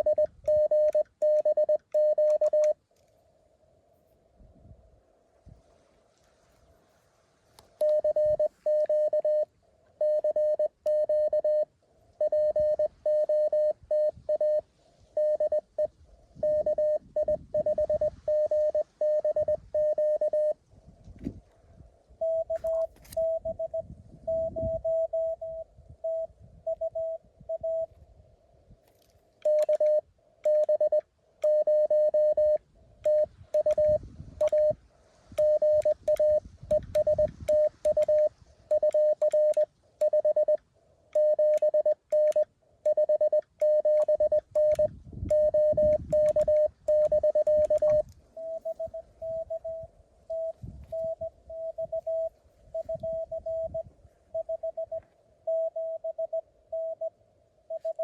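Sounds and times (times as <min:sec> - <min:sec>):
loud morse code tones: 0:00.0 - 0:02.8, 0:07.8 - 0:14.6, 0:15.2 - 0:20.6, 0:22.2 - 0:27.9, 0:35.4 - 0:40.6, 0:41.2 - 0:57.1, 0:57.7 - 0:58.0
quieter higher morse signal: 0:00.0 - 0:02.8, 0:07.8 - 0:14.6, 0:15.2 - 0:20.6, 0:35.4 - 0:58.0.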